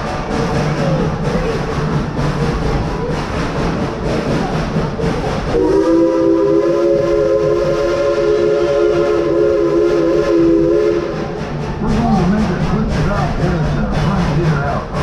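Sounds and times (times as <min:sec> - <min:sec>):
moving train noise: 0:00.0 - 0:15.0
steam locomotive whistle: 0:05.5 - 0:11.4.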